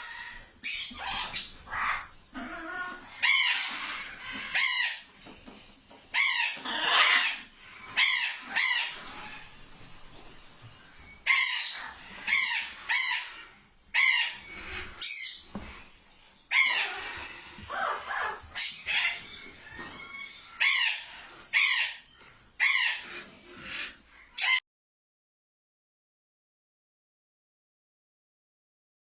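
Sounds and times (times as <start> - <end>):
bird squawking: 0.0 - 5.1, 6.2 - 9.5, 11.2 - 15.9, 16.5 - 24.6.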